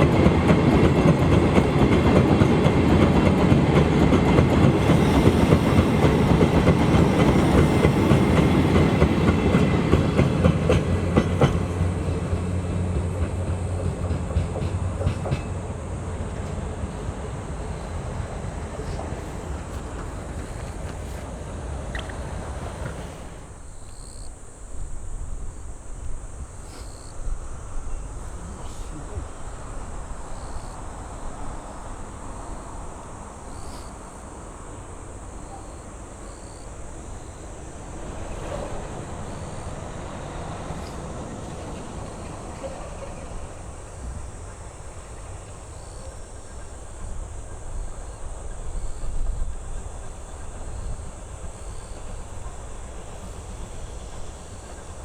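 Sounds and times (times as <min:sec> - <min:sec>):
high insect drone: 0:00.0 - 0:55.0
train rumbling: 0:00.0 - 0:55.0.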